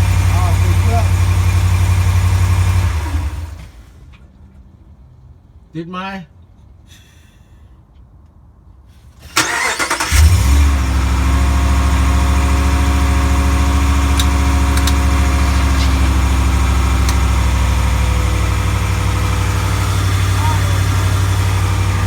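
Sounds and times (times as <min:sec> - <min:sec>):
engine cranking and idling: 0:00.0 - 0:04.1, 0:09.3 - 0:22.0.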